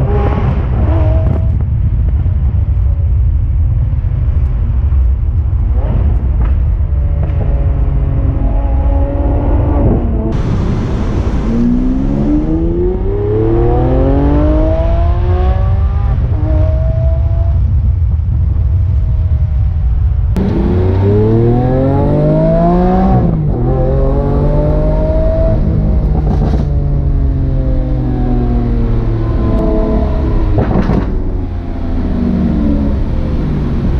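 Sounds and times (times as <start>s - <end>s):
car engine accelerating: 5.5s - 18.2s, 20.3s - 33.9s.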